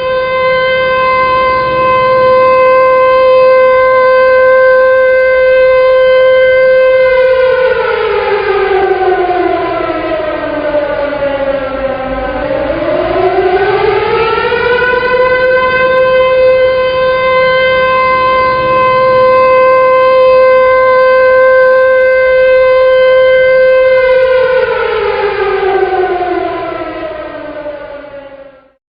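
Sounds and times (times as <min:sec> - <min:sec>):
civil defense siren wailing: 0:00.0 - 0:28.8.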